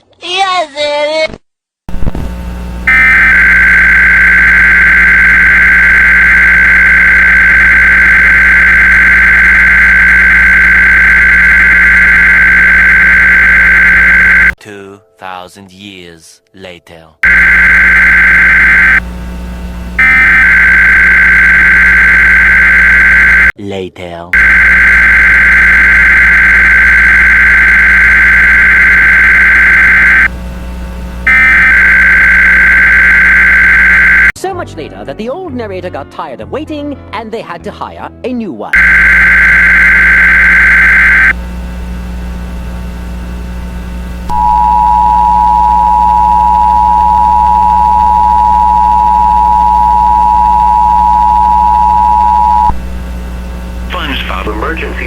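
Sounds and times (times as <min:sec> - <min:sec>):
harsh buzzing digital data bursts: 0:02.9 - 0:14.6, 0:17.2 - 0:23.5, 0:24.4 - 0:30.3, 0:31.2 - 0:34.3, 0:38.8 - 0:41.4.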